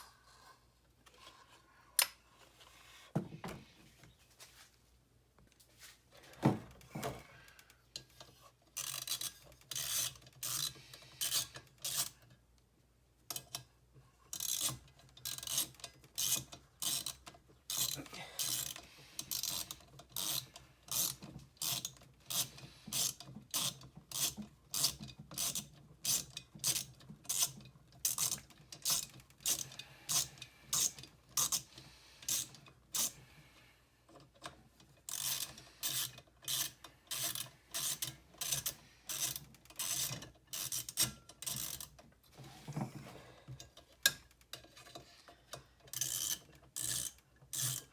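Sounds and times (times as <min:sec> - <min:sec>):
hand tool rasping strokes: 0:35.1 - 0:41.8.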